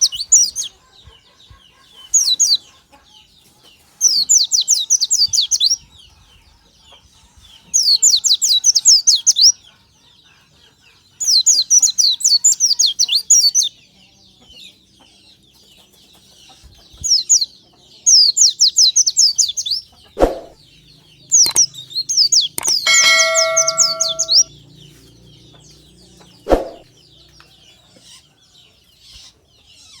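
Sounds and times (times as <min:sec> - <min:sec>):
bird twittering: 0:21.4 - 0:21.8, 0:22.6 - 0:24.5
sharp knocks: 0:22.6 - 0:24.5
steady ringing tone: 0:22.6 - 0:24.5.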